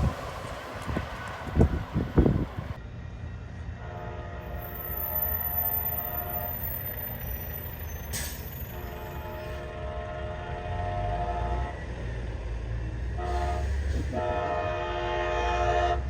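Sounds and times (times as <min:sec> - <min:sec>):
wind thumping microphone: 0:00.0 - 0:02.8
train horn blasts: 0:03.7 - 0:06.8, 0:08.7 - 0:11.9, 0:13.1 - 0:16.0.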